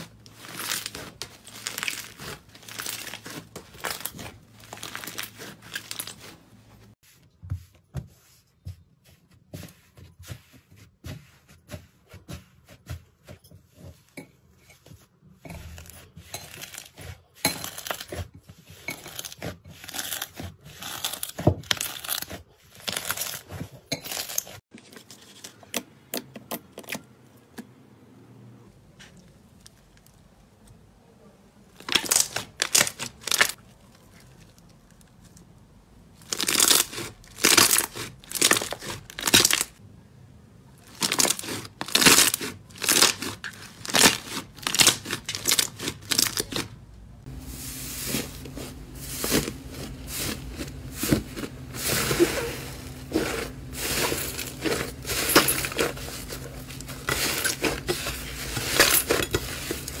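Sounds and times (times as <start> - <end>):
slime crackling and popping: 40.9 - 46.6.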